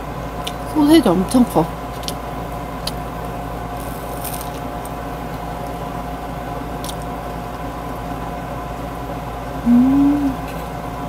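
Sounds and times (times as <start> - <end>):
air conditioner humming: 0.0 - 11.0
person humming: 9.6 - 10.6.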